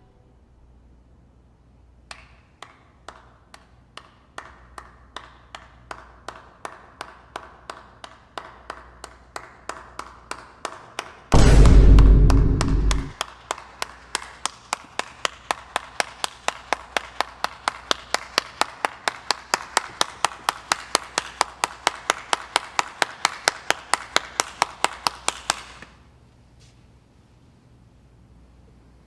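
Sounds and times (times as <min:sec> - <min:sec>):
person clapping: 0:02.1 - 0:11.2, 0:12.6 - 0:26.0
deep boom sound effect: 0:11.3 - 0:13.2.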